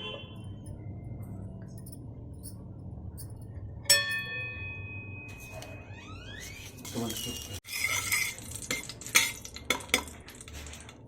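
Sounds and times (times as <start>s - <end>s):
metal spoon striking steel pan: 3.9s - 5.0s.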